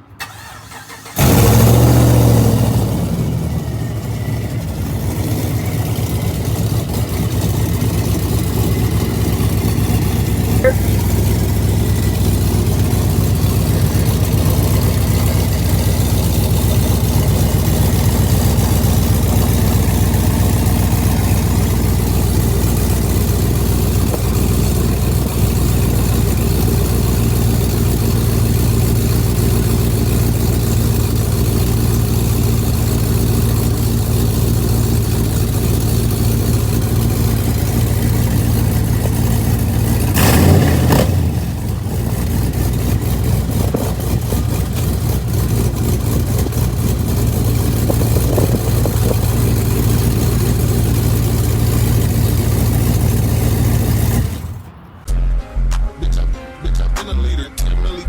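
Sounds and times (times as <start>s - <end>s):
car engine idling: 0.0s - 55.1s
engine burst: 0.0s - 55.8s.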